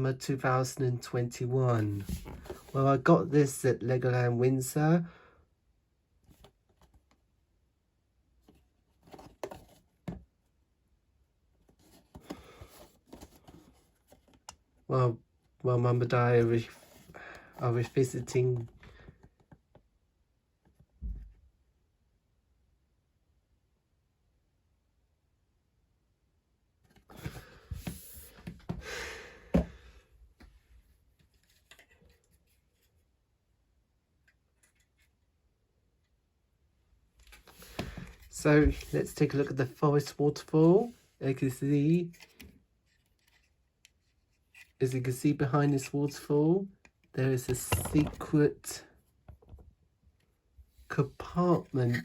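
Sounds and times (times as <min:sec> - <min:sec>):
clicks and knocks: 0:47.5 - 0:48.4
handling rustling: 0:47.5 - 0:48.4.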